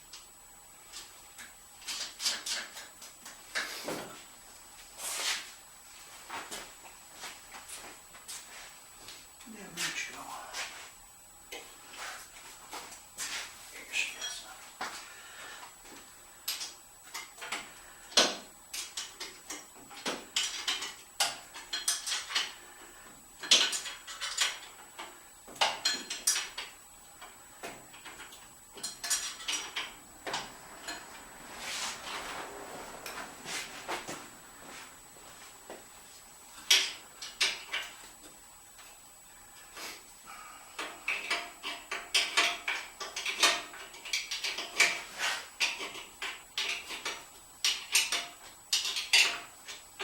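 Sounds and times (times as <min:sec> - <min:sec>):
metal tools clinking: 0:14.0 - 0:14.5.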